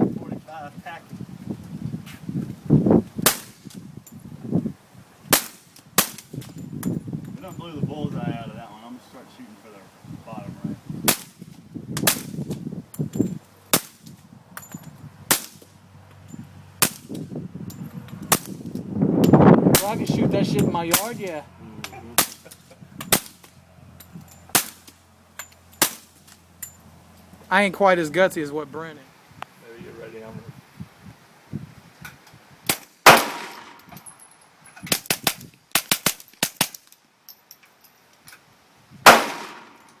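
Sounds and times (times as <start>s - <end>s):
suppressed gunshots: 32.7s - 33.8s, 39.1s - 39.8s
sharp cracks and clicks: 34.9s - 37.0s.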